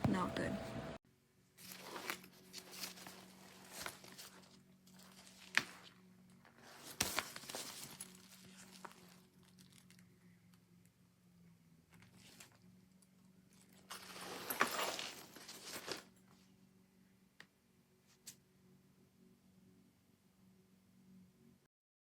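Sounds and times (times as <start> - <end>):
fabric backpack rustling: 1.6 - 10.1, 13.5 - 16.2.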